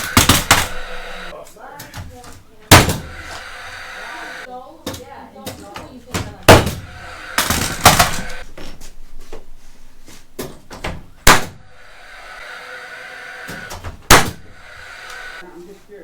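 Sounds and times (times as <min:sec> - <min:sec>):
nails hammered into wood: 0:00.0 - 0:01.0, 0:01.8 - 0:03.4, 0:04.8 - 0:08.4, 0:10.4 - 0:11.7, 0:13.5 - 0:14.9
faint steady hum: 0:00.0 - 0:05.4.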